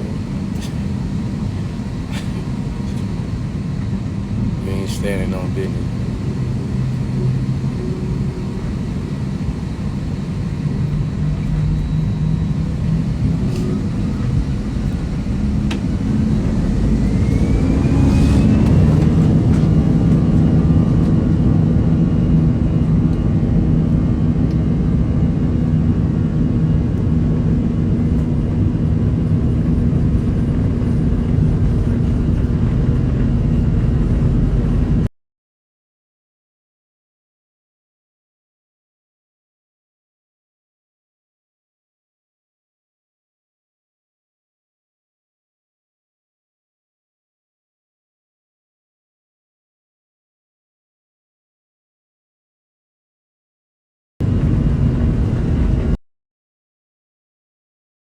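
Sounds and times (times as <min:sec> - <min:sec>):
jet engine whine rising: 0:00.0 - 0:35.1, 0:54.2 - 0:56.0
jet engines rumbling in cabin: 0:00.0 - 0:35.1, 0:54.2 - 0:56.0.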